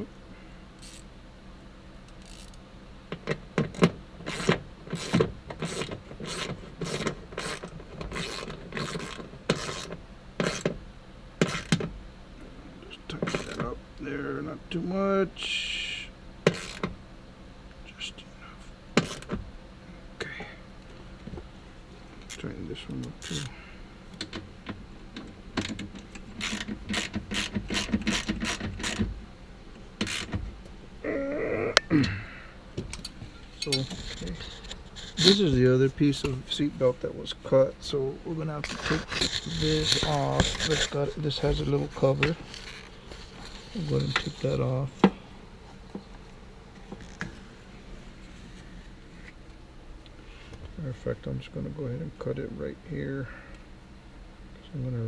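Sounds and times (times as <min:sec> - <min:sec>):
ratchet wrench clicking: 0:00.8 - 0:01.1, 0:02.1 - 0:02.6, 0:04.3 - 0:10.6, 0:16.5 - 0:16.9, 0:25.6 - 0:29.0.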